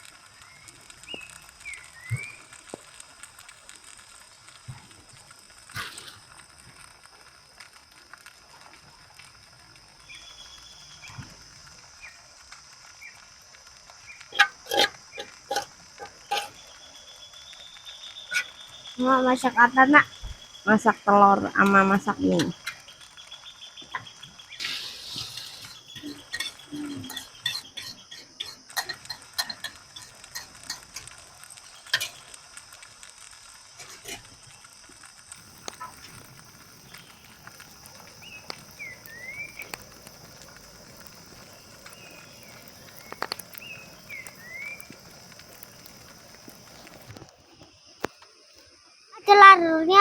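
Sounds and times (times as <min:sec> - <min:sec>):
high insect drone: 0:10.0 - 0:30.6, 0:33.6 - 0:50.0
cooking knocks and clatter: 0:14.2 - 0:16.8, 0:23.8 - 0:32.4, 0:35.4 - 0:47.4
rising and falling chirps: 0:35.4 - 0:47.2.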